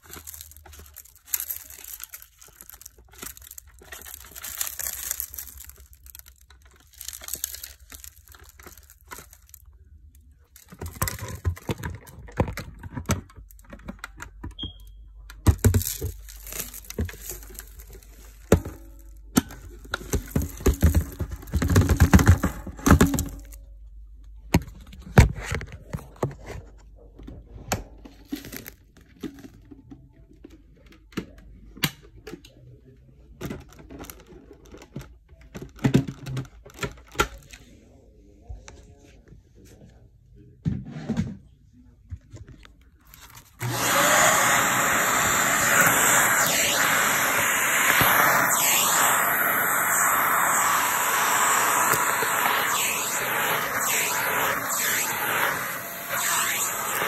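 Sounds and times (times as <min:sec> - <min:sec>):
dry material crunching: 0:00.0 - 0:09.6
vacuum cleaner running: 0:19.9 - 0:23.3, 0:43.6 - 0:57.0.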